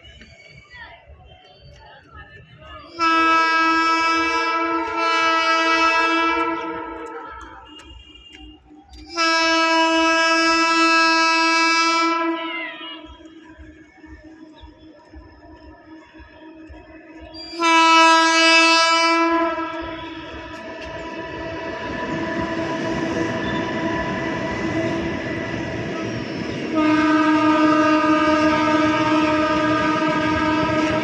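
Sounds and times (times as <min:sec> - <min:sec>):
train rumble: 0:00.0 - 0:31.0
locomotive horn blasts: 0:03.0 - 0:13.4, 0:17.6 - 0:25.7, 0:26.7 - 0:31.0.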